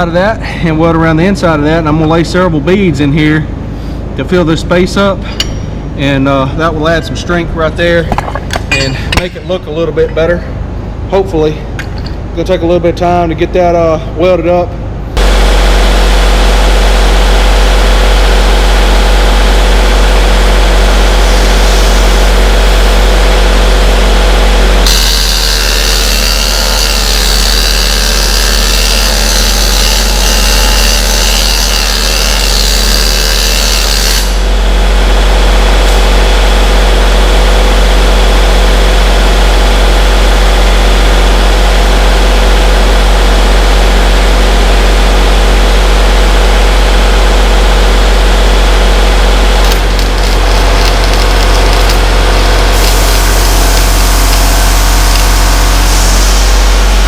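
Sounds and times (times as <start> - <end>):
low machine hum: 0.0 - 57.0
arc welding crackling: 15.2 - 34.7, 48.8 - 57.0.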